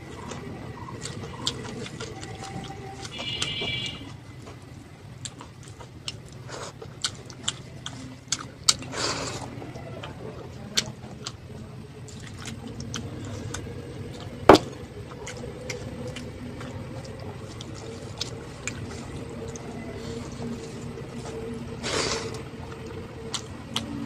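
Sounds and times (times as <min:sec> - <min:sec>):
chewing with wet mouth clicks: 0:00.1 - 0:04.6, 0:05.2 - 0:21.5, 0:22.1 - 0:24.0
noisy crunch or slurp: 0:21.8 - 0:22.5.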